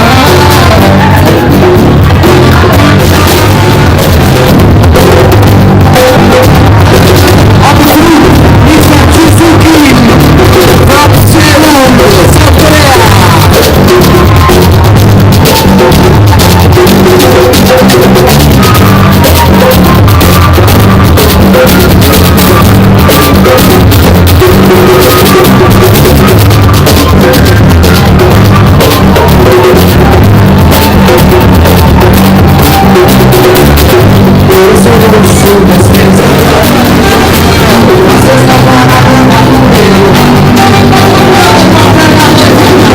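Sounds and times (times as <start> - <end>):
distorted live band: 0.0 - 42.9.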